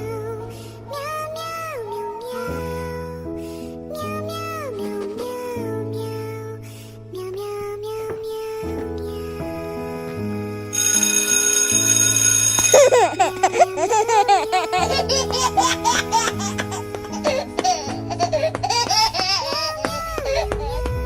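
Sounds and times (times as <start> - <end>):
baby-like voice laughing: 12.8 - 20.9.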